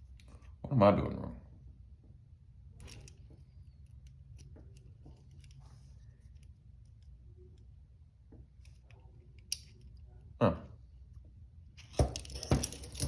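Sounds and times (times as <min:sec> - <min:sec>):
low steady hum: 0:00.0 - 0:13.0
metal handcuffs clicking: 0:02.8 - 0:03.2, 0:09.4 - 0:10.0, 0:11.8 - 0:13.0.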